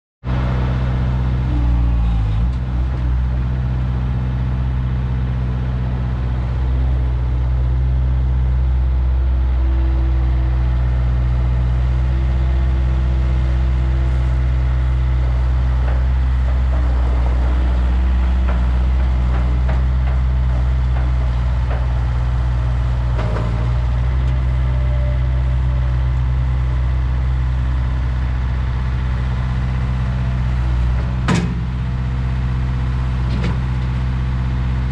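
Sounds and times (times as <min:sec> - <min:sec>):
diesel engine running: 0:00.3 - 0:34.9.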